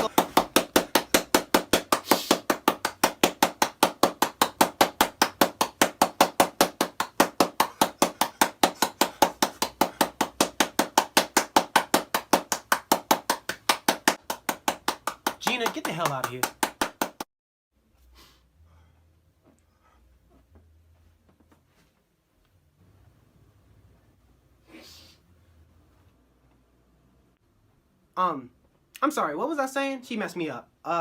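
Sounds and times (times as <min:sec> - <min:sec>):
rapid even knocking: 0:00.0 - 0:17.2.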